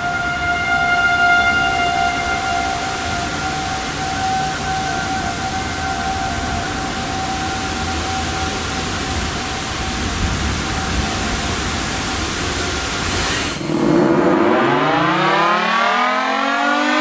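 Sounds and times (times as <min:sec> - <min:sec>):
distant warning siren: 0:00.0 - 0:11.6, 0:13.6 - 0:17.0
steady rushing noise: 0:10.1 - 0:16.5.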